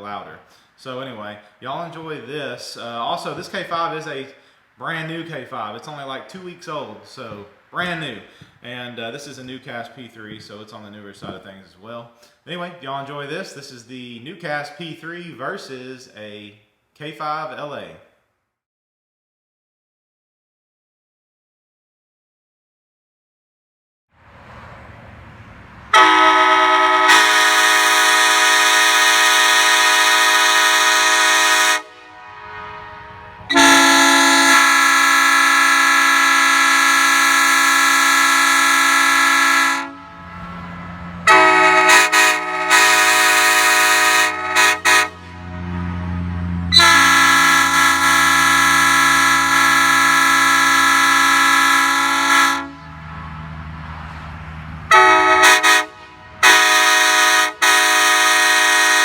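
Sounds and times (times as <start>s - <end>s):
air train horn blasts: 25.9s - 53.6s, 54.9s - 59.0s
short choppy horn toots: 26.0s - 53.4s, 54.9s - 59.0s.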